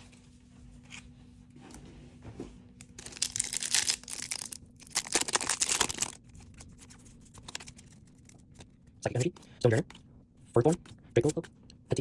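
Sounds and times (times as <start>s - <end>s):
foil wrapper tearing and crinkling: 3.0s - 8.4s.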